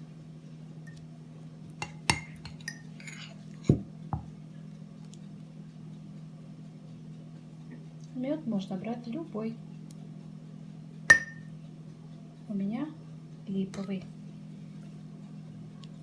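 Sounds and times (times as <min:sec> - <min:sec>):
low steady hum: 0:00.0 - 0:16.0
spoon scraping: 0:01.8 - 0:03.7
spoon knocking on glass jar: 0:11.1 - 0:11.5.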